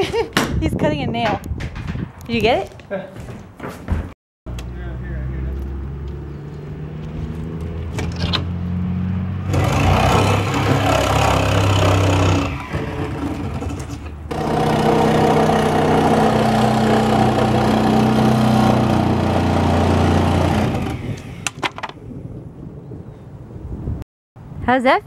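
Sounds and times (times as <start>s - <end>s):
reciprocating saw cutting wood: 9.4s - 21.6s.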